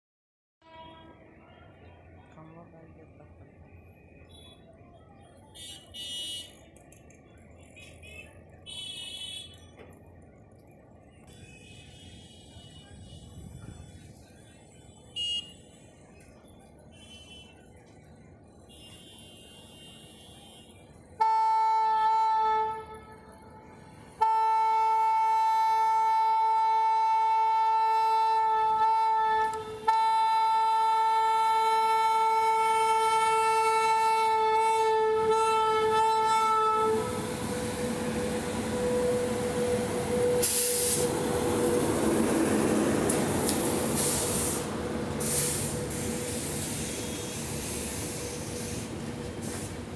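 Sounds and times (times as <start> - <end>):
locomotive horn blasts: 0.6 - 1.2, 15.1 - 15.6, 18.7 - 23.5, 24.1 - 42.0
air hiss: 40.4 - 41.2, 43.6 - 49.9.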